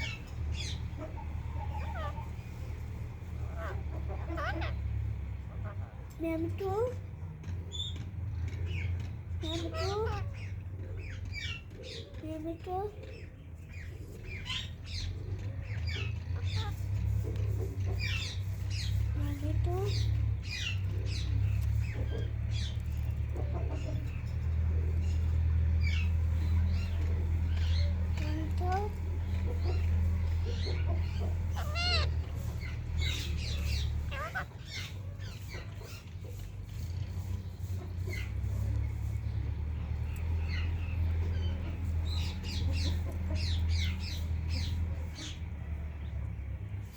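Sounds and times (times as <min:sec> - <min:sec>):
parrot chirps: 0:29.8 - 0:36.0.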